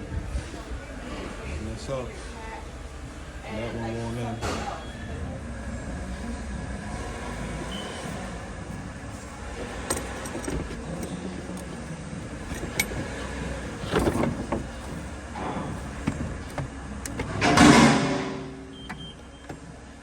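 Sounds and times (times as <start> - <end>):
metal clicks and rattles: 8.0 - 19.7.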